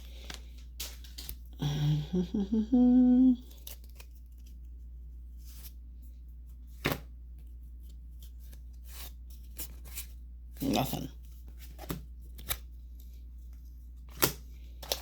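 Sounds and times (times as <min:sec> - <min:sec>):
person humming: 0:01.6 - 0:03.6
trading cards rustling: 0:03.4 - 0:05.8.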